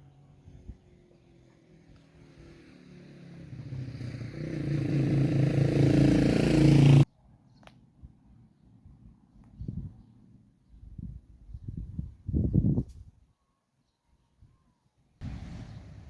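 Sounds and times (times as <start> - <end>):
vehicle engine approaching: 0.0 - 7.1, 15.2 - 16.0.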